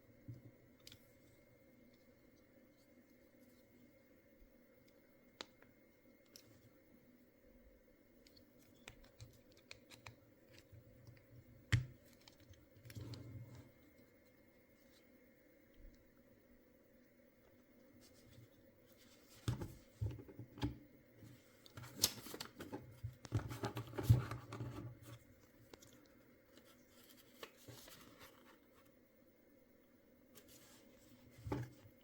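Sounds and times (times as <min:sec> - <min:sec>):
hands handling plastic toy: 0:21.2 - 0:28.9.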